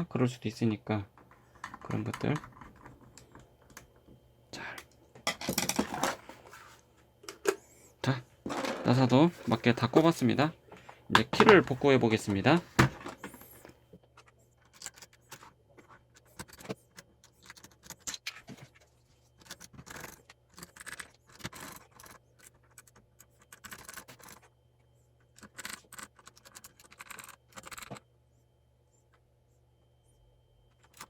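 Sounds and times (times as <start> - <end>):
keycaps scraping: 1.2 - 4.0, 4.6 - 24.6, 25.2 - 28.1, 30.7 - 31.0
keycaps clicking: 14.6 - 18.5, 19.4 - 24.5, 25.3 - 28.0.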